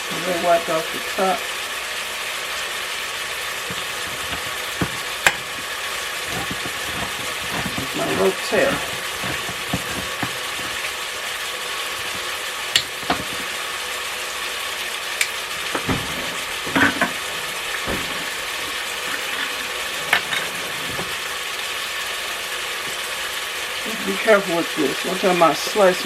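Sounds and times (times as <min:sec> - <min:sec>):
meat sizzling: 0:00.0 - 0:26.0
clinks and knocks: 0:03.5 - 0:10.9, 0:11.9 - 0:13.6, 0:15.6 - 0:21.2.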